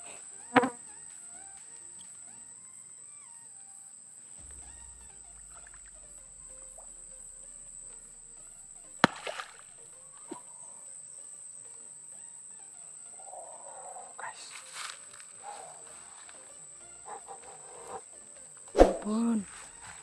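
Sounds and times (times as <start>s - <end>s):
insects trilling: 0.0s - 20.0s
sharp loud knock: 4.4s - 9.8s.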